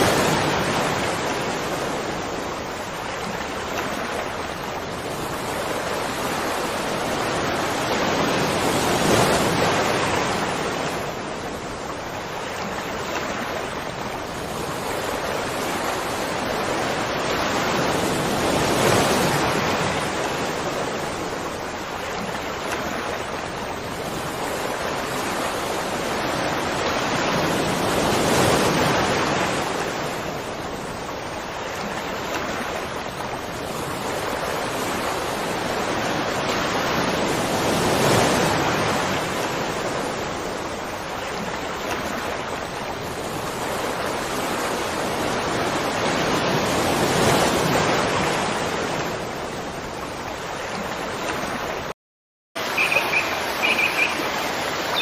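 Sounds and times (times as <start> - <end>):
birds chirping: 52.6 - 55.0
waterfall rushing: 52.6 - 55.0.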